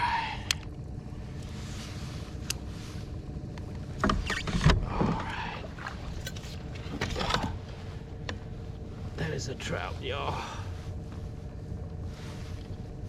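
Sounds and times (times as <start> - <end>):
boat motor humming: 0.0 - 13.0.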